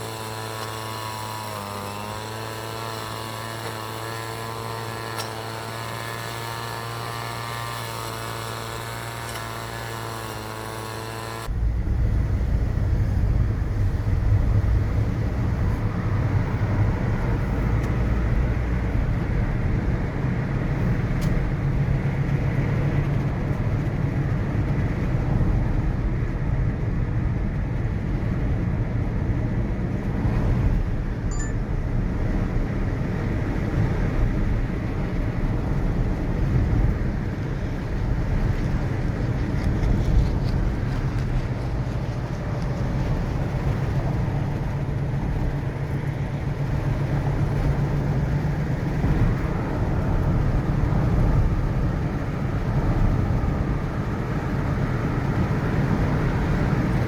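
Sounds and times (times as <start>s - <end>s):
humming drone: 0.0s - 20.0s
city road traffic rumble: 0.0s - 57.0s.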